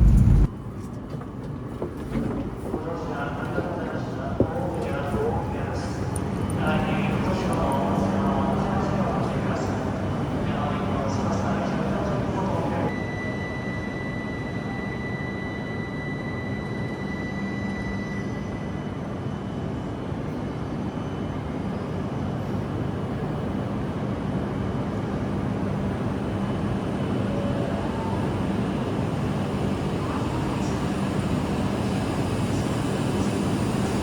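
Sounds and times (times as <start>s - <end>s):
train cabin rumble and hum: 0.0s - 13.0s.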